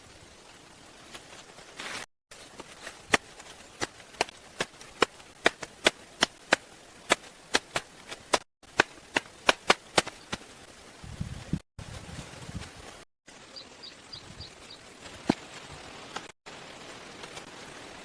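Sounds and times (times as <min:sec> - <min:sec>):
wood chopping: 0:02.6 - 0:10.4.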